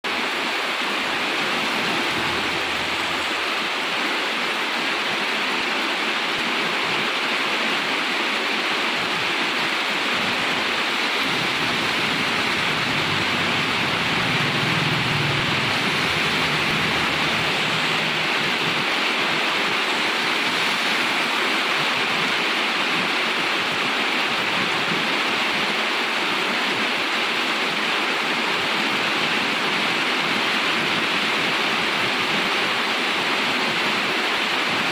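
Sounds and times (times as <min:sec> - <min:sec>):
vehicles passing on highway: 0:00.1 - 0:04.4, 0:10.3 - 0:22.2
rain hissing: 0:00.1 - 0:05.1, 0:09.4 - 0:23.2.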